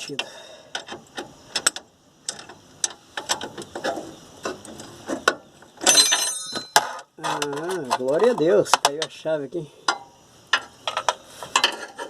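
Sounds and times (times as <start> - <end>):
metal wrench clattering: 5.8 - 9.0.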